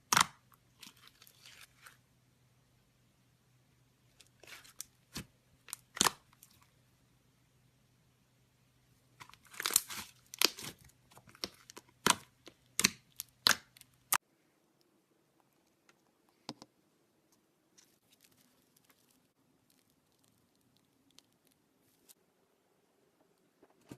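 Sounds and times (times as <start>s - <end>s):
slime crackling and popping: 4.2s - 6.6s, 9.2s - 14.2s, 18.1s - 22.2s.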